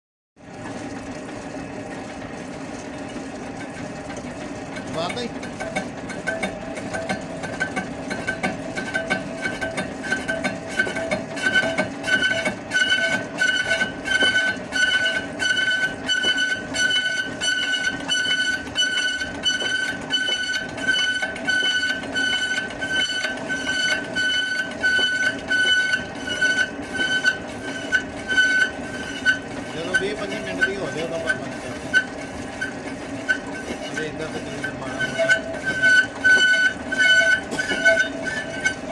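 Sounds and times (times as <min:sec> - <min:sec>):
lathe whining: 0:03.0 - 0:38.9.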